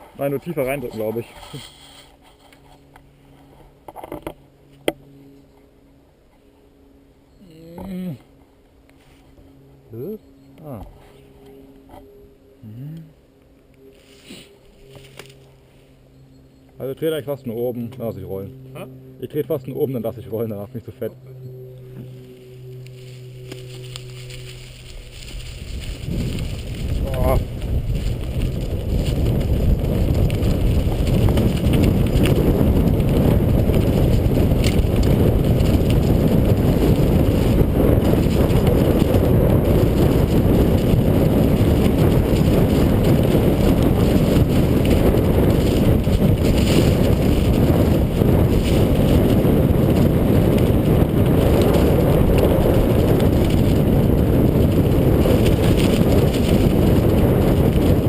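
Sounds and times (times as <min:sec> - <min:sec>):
rolling and rattling on trail: 0:00.0 - 0:12.4, 0:13.4 - 0:58.0
wind buffeting microphone: 0:22.1 - 0:58.0.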